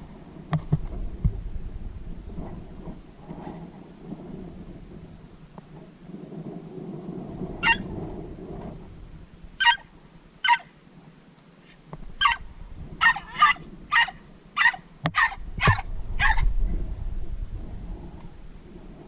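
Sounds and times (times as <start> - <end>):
small dog yapping: 7.6 - 7.9, 9.6 - 10.7, 12.2 - 12.4, 13.0 - 16.5.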